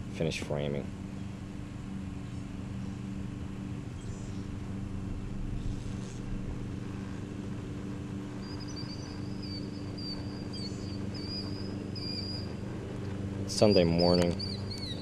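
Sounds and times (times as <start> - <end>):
steady low hum: 0.0 - 15.0
bird singing a warbling trill: 3.9 - 4.6, 8.0 - 15.0.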